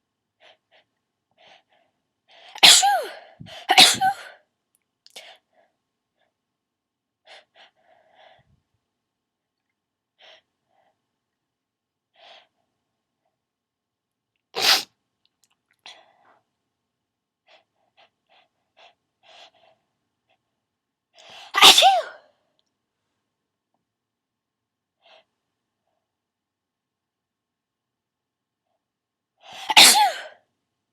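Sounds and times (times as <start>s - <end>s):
person sneezing: 2.5s - 4.4s, 14.6s - 14.9s, 21.3s - 22.2s, 29.5s - 30.4s.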